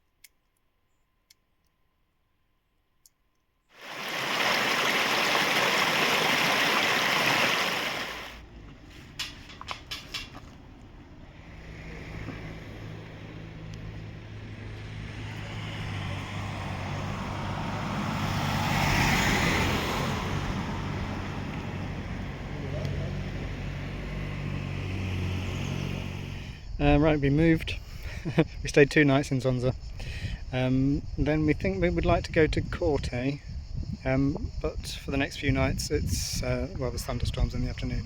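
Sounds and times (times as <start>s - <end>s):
vehicle engine humming: 7.9s - 26.6s.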